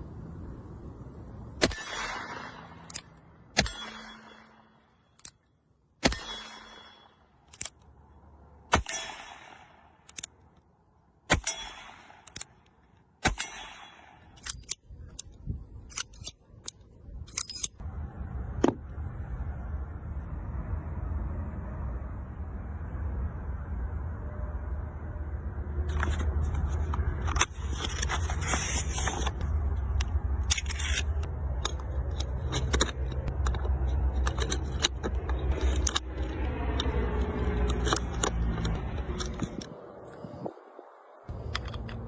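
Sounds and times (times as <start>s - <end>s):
steady low rumble: 0.0s - 42.0s
gunshots with echo: 1.6s - 2.8s, 8.7s - 9.8s.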